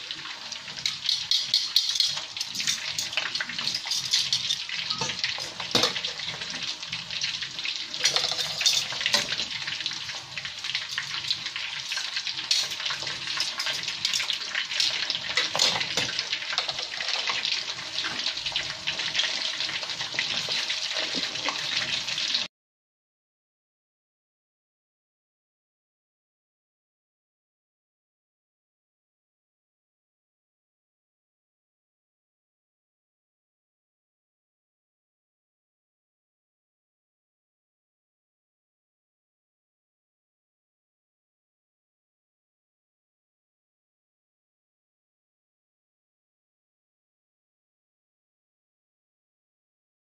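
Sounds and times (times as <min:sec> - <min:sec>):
food sizzling in a frying pan: 0:00.0 - 0:22.5.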